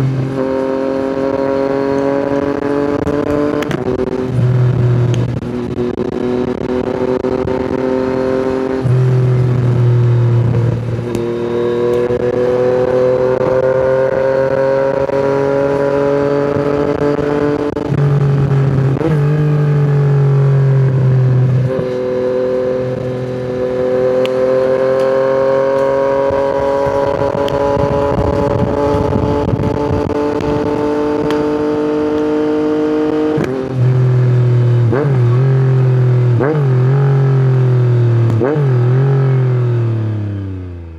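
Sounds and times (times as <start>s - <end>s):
motorcycle engine under throttle: 0.0s - 40.9s.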